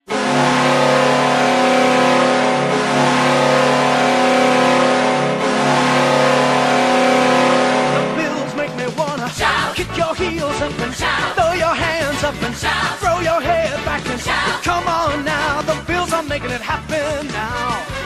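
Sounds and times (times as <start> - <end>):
hockey goal horn blasts: 0.0 - 9.0.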